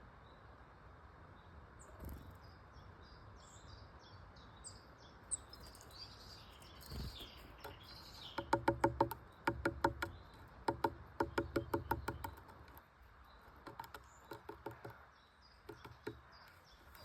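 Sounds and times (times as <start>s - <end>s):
sharp taps: 7.6s - 12.8s, 13.4s - 15.0s, 15.6s - 17.0s.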